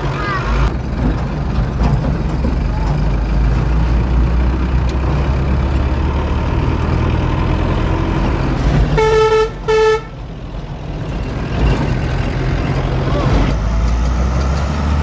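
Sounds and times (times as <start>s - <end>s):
heavy vehicle engine running: 0.0s - 15.0s
vehicle horn toots: 9.0s - 10.2s.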